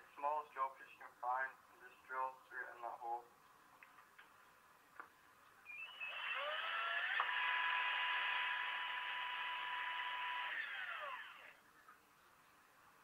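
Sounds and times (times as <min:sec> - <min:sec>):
electric drill whining: 0:05.7 - 0:11.6.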